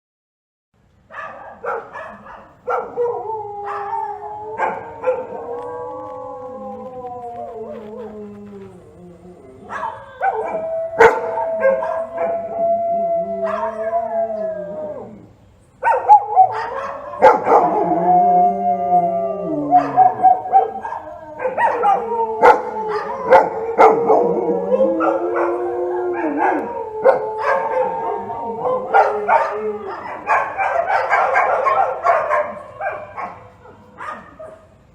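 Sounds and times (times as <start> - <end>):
dog barking: 1.1 - 4.0, 9.7 - 12.2, 13.4 - 13.8, 15.8 - 17.8, 19.8 - 24.3, 28.6 - 34.8
dog howling: 2.1 - 34.6.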